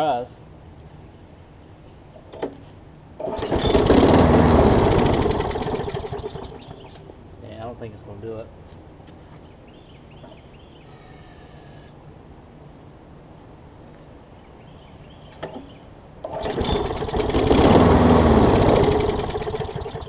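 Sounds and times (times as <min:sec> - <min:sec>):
lawn mower engine cranking: 0:03.2 - 0:07.1, 0:16.2 - 0:20.0
faint bird chirps: 0:09.4 - 0:12.0.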